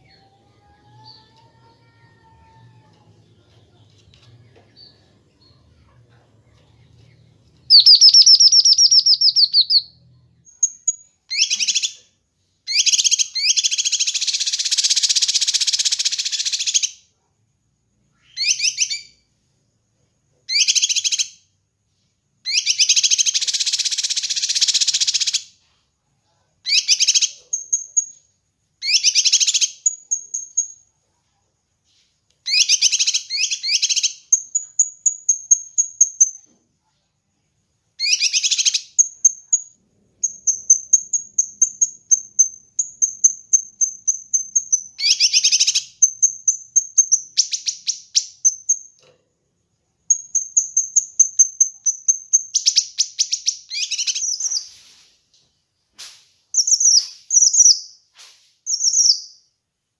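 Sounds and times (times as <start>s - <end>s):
songbird trilling: 7.7s - 9.9s, 38.0s - 48.9s, 50.1s - 54.6s
high bird whistles: 7.7s - 10.0s, 10.6s - 12.0s, 18.2s - 19.2s, 22.5s - 25.4s, 28.8s - 30.5s, 38.0s - 48.9s, 50.1s - 54.8s, 56.6s - 58.0s, 58.6s - 59.4s.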